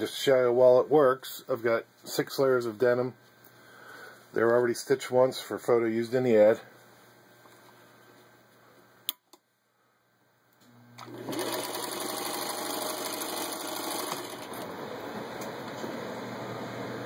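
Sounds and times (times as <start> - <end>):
sewing machine running: 11.0 - 15.2.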